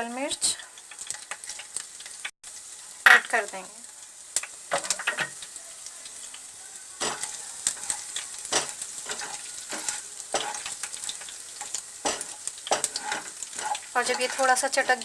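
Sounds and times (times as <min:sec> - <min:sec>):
spices sizzling in hot oil: 0:00.0 - 0:15.0
spoon scraping a pan: 0:04.7 - 0:05.5, 0:07.0 - 0:15.0.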